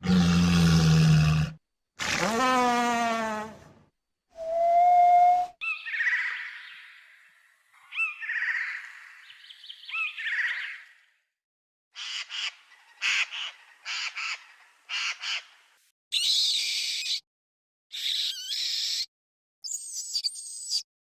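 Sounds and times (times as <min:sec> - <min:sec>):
harsh bird calls: 0:05.6 - 0:11.1, 0:12.0 - 0:15.6
bird squawks: 0:12.0 - 0:15.6.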